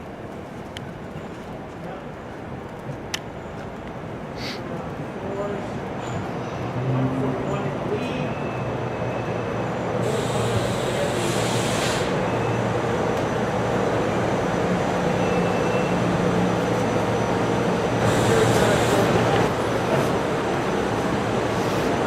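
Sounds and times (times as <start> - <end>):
train rumbling: 0.0 - 22.0
train hissing: 4.4 - 4.7, 9.9 - 12.7, 17.7 - 22.0.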